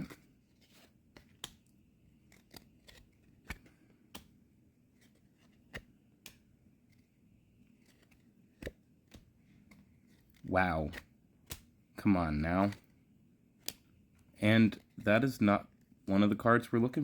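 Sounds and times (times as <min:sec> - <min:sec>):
trading cards clicking: 0:01.2 - 0:04.4.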